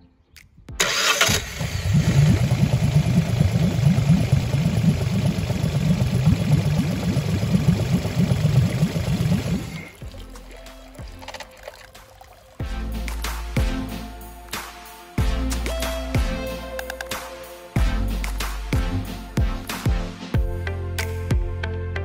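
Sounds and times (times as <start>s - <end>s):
outboard motor running: 0.8s - 12.3s.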